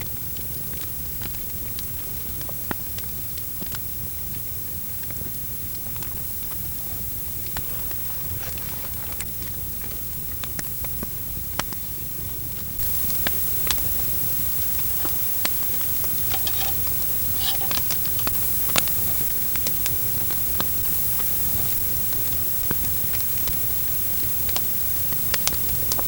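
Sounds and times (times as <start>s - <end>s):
campfire crackling and popping: 12.8s - 26.0s
steady hiss: 12.8s - 26.0s.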